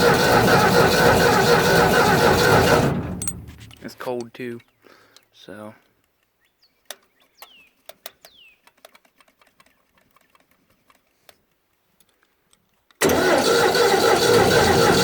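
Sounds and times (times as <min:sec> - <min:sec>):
engine cranking: 0:00.0 - 0:03.9, 0:13.0 - 0:15.0.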